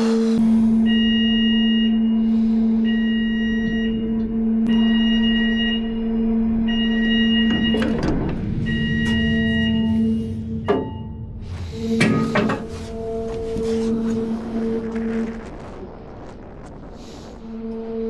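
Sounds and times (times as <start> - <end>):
machinery humming: 0.0 - 18.0
warning beeper beeping: 2.8 - 14.7
metallic clanks: 10.6 - 13.0.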